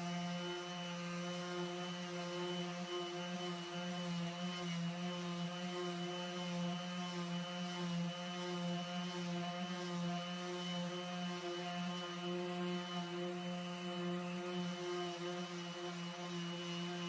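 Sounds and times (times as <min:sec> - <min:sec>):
electric power tool humming: 0:00.0 - 0:17.0.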